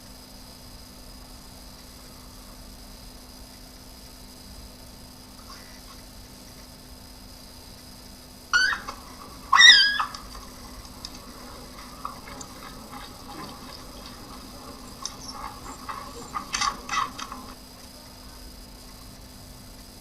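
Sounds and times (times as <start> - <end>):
high-pitched animal calls: 8.6 - 17.6
faint clicks and taps: 8.7 - 17.6.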